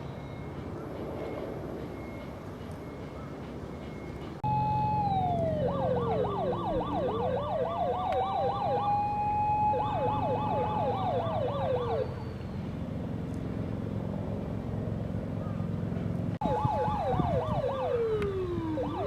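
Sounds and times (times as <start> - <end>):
electronic siren wail and yelp: 4.4 - 12.5, 16.4 - 19.0.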